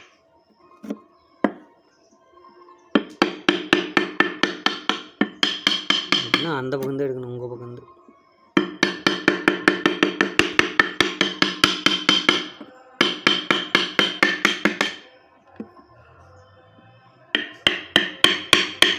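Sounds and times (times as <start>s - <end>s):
mallet tapping on chisel: 3.0s - 7.0s, 8.6s - 15.0s, 17.4s - 18.9s.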